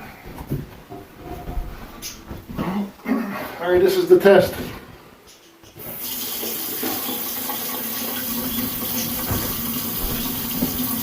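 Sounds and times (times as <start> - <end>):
water running into sink: 5.8 - 11.0.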